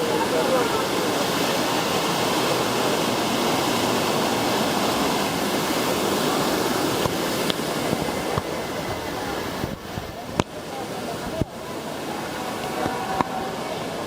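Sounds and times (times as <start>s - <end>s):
rushing water: 0.0s - 14.0s.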